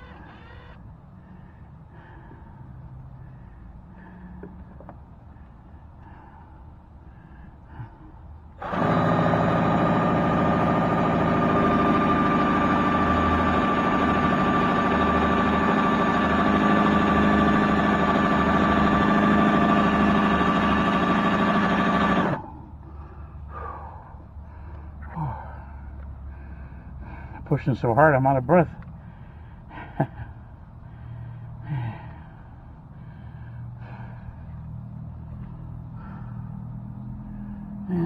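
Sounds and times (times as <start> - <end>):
electric drill running: 8.6 - 22.4.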